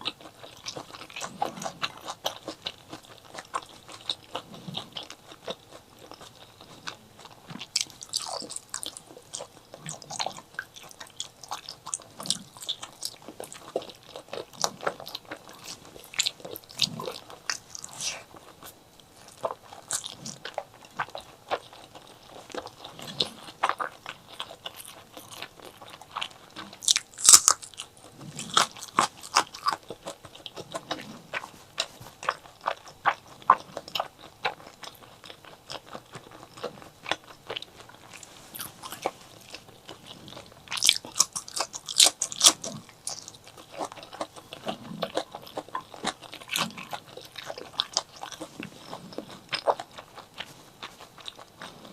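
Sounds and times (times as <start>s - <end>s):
crunching bites: 0.0s - 51.9s
wet chewing clicks: 0.0s - 51.9s.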